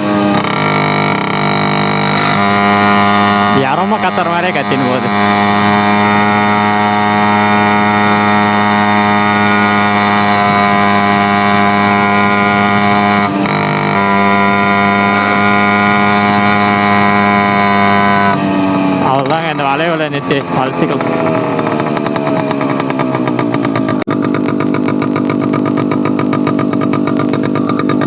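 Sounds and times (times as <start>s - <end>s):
moped engine screaming: 0.0s - 28.0s.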